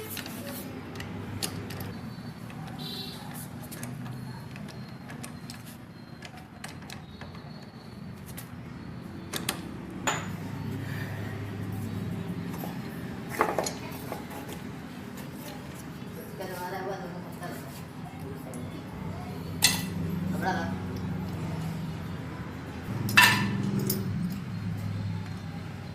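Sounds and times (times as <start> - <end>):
sharp metal clanks: 23.0 - 24.4
metal tools clinking: 23.0 - 25.2.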